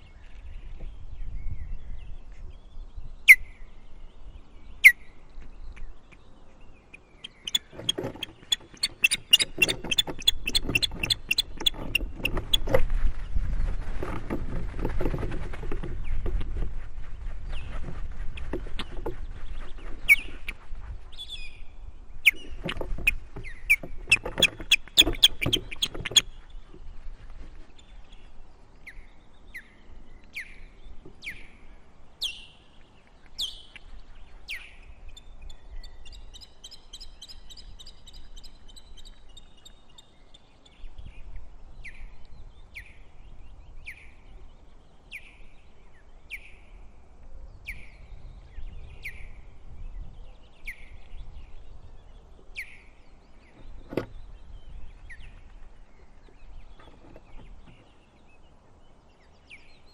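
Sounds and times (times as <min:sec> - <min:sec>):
osprey alarm calls: 0:06.9 - 0:12.8, 0:22.2 - 0:26.4
knocks and rustling: 0:07.5 - 0:16.9.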